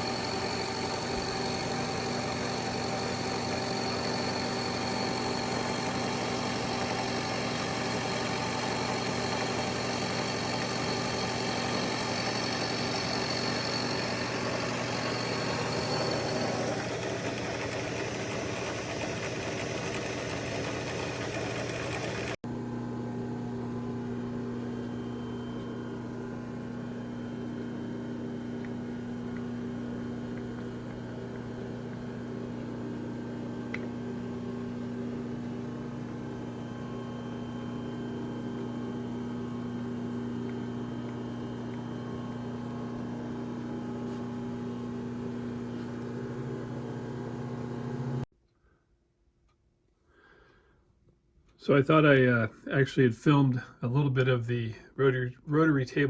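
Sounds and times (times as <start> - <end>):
rushing machining noise: 0.0 - 22.4
milling machine motor hum: 0.0 - 48.3.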